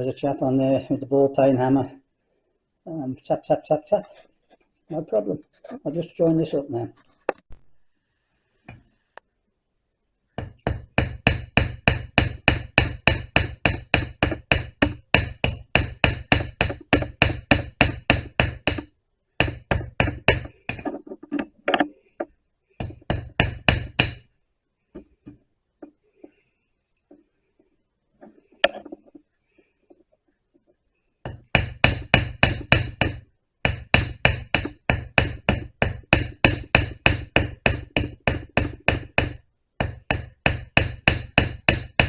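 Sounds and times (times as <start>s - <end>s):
hammer tapping metal rivet: 10.4s - 24.3s, 31.3s - 42.0s.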